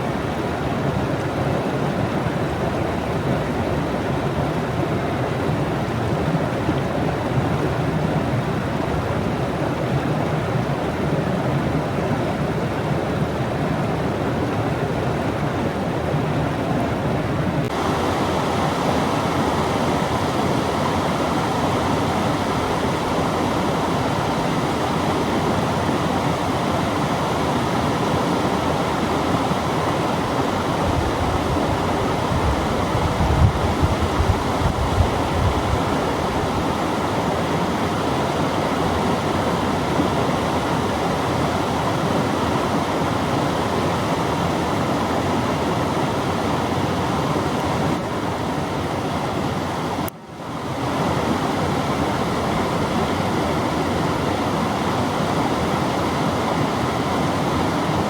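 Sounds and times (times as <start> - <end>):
waterfall rushing: 17.6 - 49.0.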